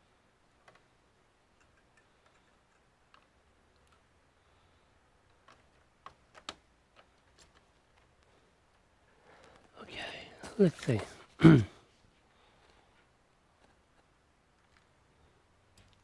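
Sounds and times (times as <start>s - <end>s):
clicks and taps of computer parts: 5.4s - 7.6s.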